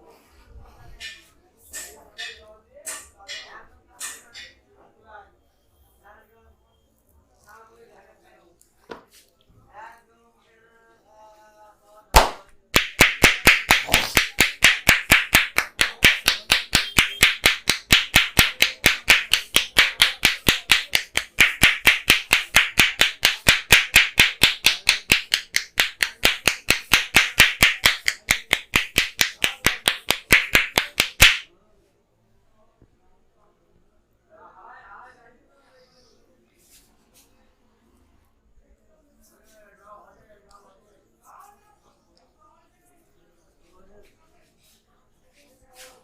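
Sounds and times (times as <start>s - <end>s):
hands clapping rhythmically: 12.1s - 31.5s.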